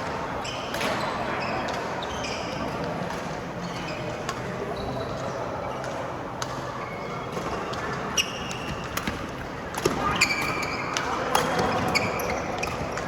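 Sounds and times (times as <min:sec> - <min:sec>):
shoes squeaking on court floor: 0:00.4 - 0:13.0
rackets hitting shuttlecock: 0:07.3 - 0:13.0.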